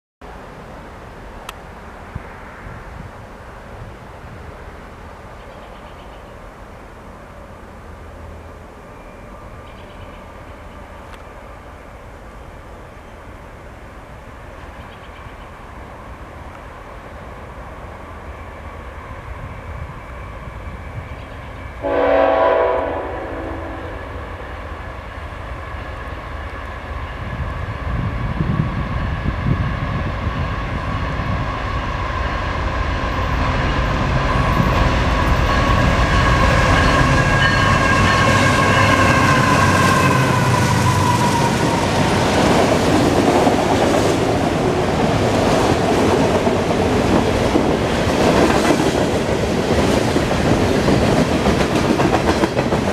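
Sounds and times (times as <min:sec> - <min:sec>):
locomotive horn blasts: 0:21.8 - 0:24.4, 0:35.3 - 0:40.7.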